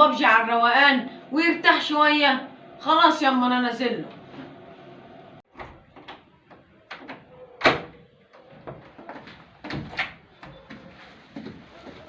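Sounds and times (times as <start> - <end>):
door knocks and clatters: 8.6 - 10.2.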